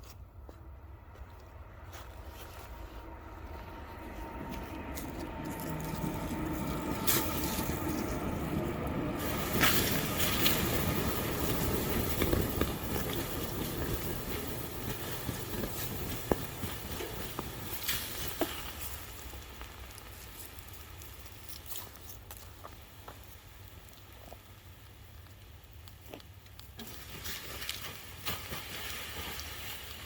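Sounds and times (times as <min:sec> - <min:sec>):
low rumble: 0:00.0 - 0:21.0
crackling campfire: 0:00.0 - 0:30.0.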